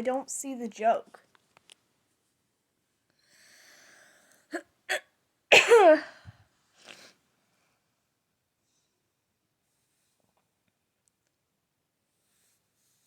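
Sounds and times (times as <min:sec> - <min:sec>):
woman sneezing: 0:04.9 - 0:06.2.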